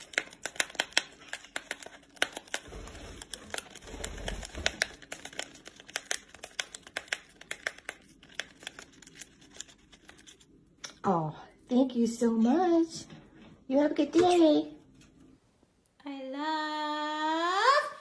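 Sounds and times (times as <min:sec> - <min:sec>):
wrapper crinkling: 0:00.0 - 0:10.6.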